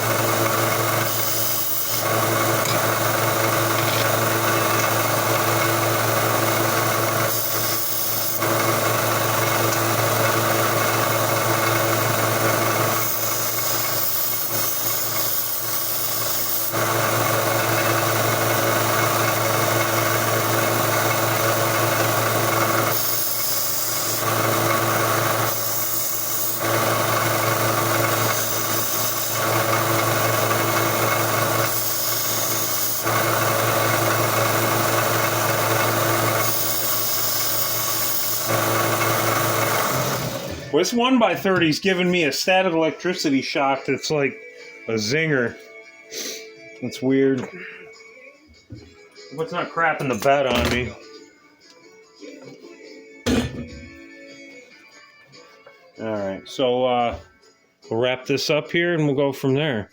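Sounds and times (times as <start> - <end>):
belt sander motor hum: 0.0 - 40.7
metal grinding on belt sander: 0.0 - 40.7.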